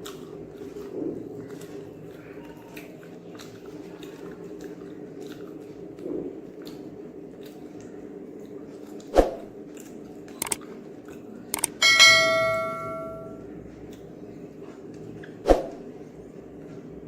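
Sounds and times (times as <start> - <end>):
light clicks: 10.4 - 10.6
metal utensil clanging: 11.6 - 13.4.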